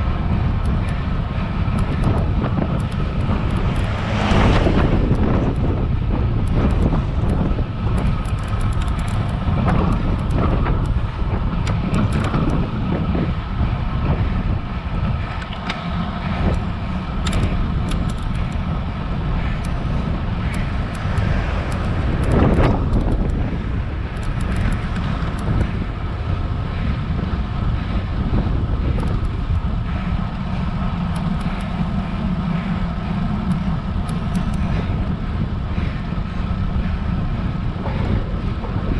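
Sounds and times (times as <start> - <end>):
wind noise on microphone: 0.0 - 38.9.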